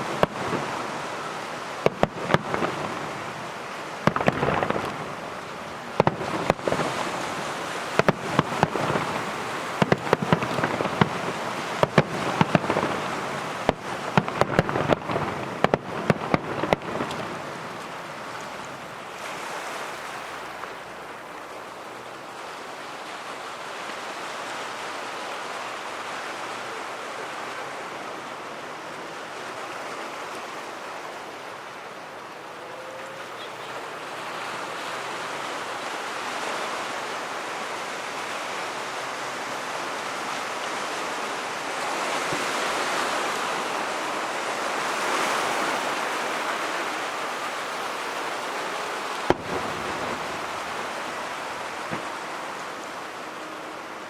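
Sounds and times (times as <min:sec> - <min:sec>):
fireworks crackling and banging: 0:00.0 - 0:19.0, 0:41.8 - 0:44.1, 0:45.6 - 0:52.6
steady wash of noise: 0:00.0 - 0:54.0.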